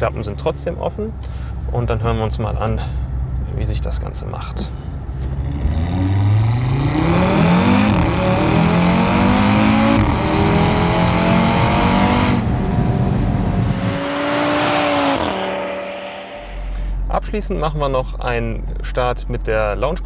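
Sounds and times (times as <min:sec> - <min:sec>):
car engine accelerating hard: 0:05.0 - 0:16.9.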